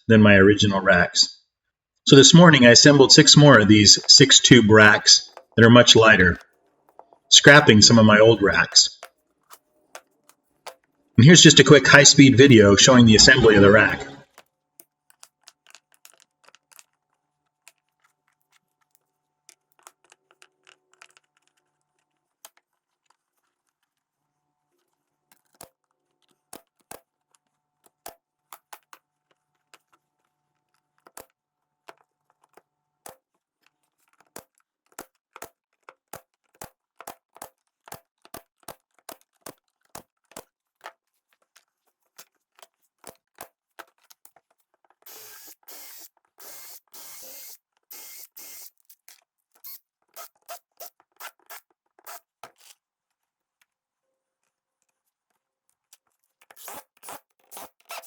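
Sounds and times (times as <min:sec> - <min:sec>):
clicks of wooden parts handled: 0:14.3 - 0:24.0, 0:24.8 - 0:46.5.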